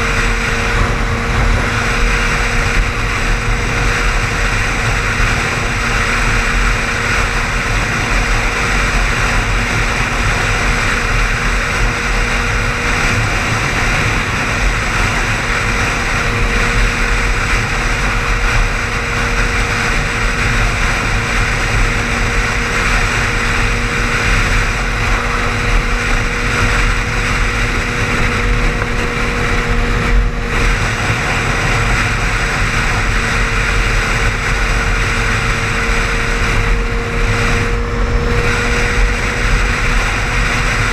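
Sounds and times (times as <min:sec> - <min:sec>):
car driving on highway: 0:00.0 - 0:40.9
constant low hum: 0:00.0 - 0:40.9.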